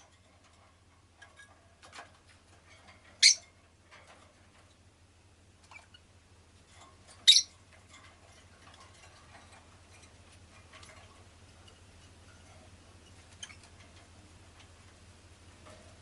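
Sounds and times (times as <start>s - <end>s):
lovebird chirping: 3.2s - 3.4s, 7.2s - 7.5s.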